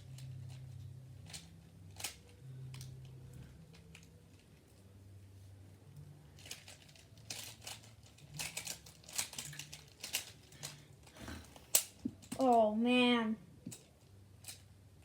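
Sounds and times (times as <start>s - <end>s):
plastic cube creaking and clicking: 0.0s - 4.5s, 6.4s - 12.5s.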